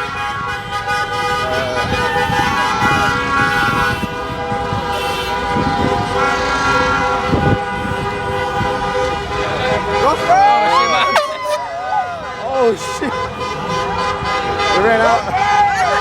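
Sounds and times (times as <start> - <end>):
car horns honking: 0.0 - 16.0
street traffic noise: 0.0 - 16.0.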